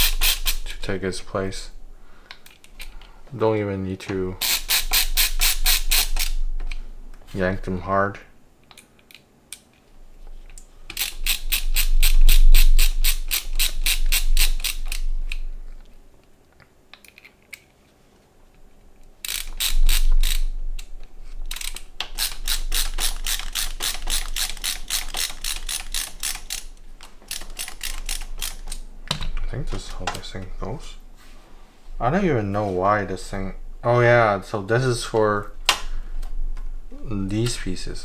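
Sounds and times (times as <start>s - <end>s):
ratcheting screwdriver clicking: 0.0s - 0.9s, 4.4s - 6.8s, 10.5s - 15.4s, 19.2s - 29.2s.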